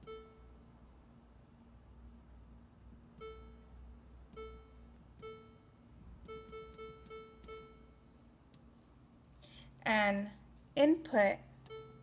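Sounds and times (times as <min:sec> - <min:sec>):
keypad beeps: 0:00.0 - 0:00.4, 0:03.2 - 0:03.7, 0:04.3 - 0:05.6, 0:06.2 - 0:07.9, 0:11.7 - 0:12.0.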